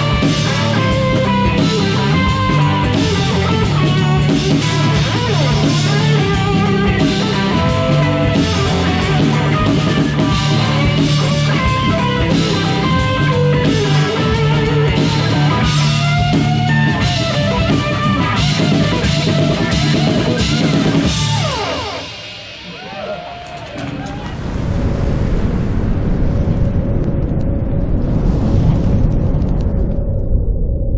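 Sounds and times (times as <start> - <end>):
live rock band playing: 0.0 - 24.4.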